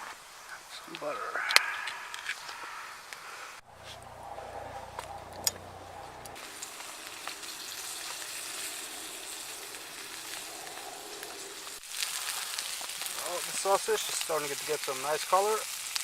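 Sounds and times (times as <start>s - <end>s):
sausage sizzling in a pan: 6.4s - 16.0s.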